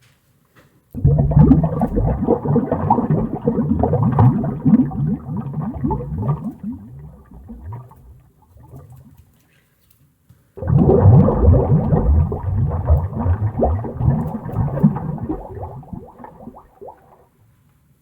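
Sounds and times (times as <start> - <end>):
bubbles rising under water: 1.0 - 9.2, 10.6 - 17.2.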